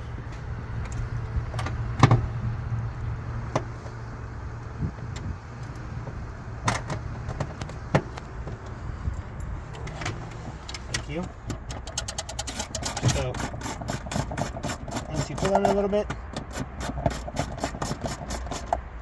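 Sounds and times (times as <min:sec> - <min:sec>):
wrench clicking on metal nuts: 0:11.5 - 0:18.8.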